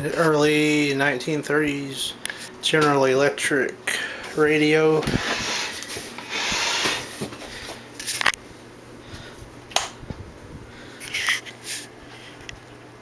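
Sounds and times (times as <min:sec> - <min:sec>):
rustling and rubbing: 0:11.0 - 0:12.5.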